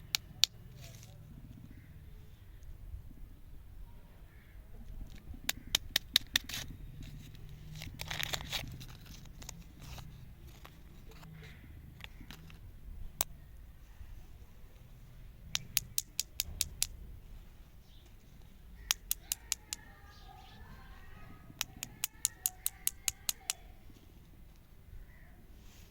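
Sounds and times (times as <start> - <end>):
sharp clicks: 0.0 - 0.6, 5.0 - 11.3, 15.5 - 17.0, 18.1 - 20.2, 21.5 - 23.7.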